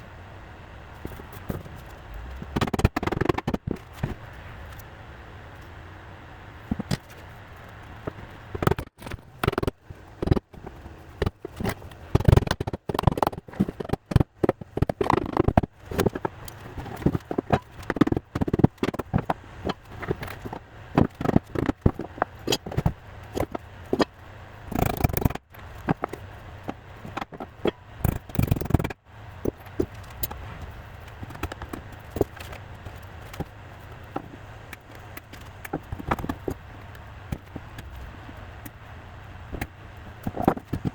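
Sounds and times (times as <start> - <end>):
wood scraping: 6.7 - 28.9.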